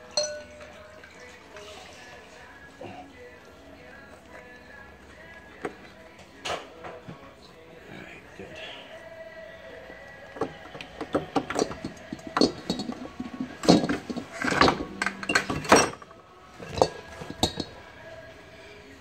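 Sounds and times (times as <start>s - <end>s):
metal clinks and knocks: 0.0s - 0.7s, 10.4s - 17.8s.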